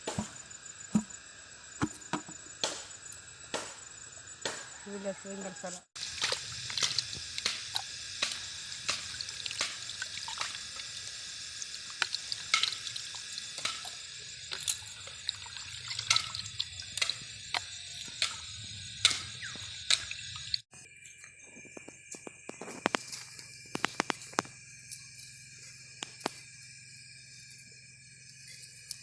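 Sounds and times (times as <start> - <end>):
steady watery hiss: 5.6 - 20.7
water splashing and dripping: 6.0 - 20.6.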